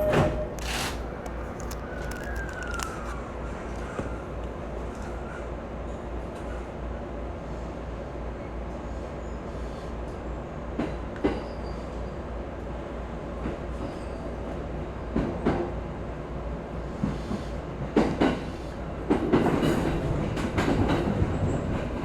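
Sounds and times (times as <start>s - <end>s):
wheels clicking over rail joints: 0.0s - 3.0s
electric train wheels rumbling: 0.0s - 5.4s, 16.9s - 22.0s.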